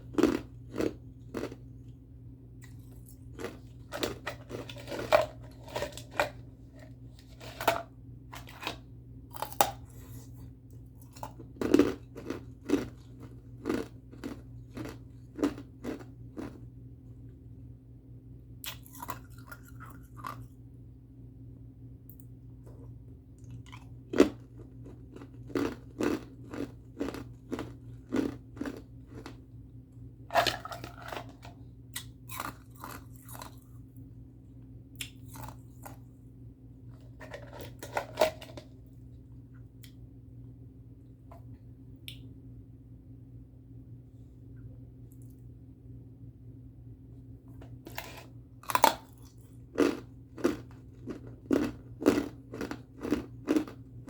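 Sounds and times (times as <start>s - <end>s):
ice being chewed: 0.0s - 1.6s, 2.6s - 16.6s, 18.6s - 20.5s, 22.7s - 29.4s, 30.3s - 33.8s, 35.0s - 36.0s, 36.9s - 38.7s, 47.8s - 53.9s.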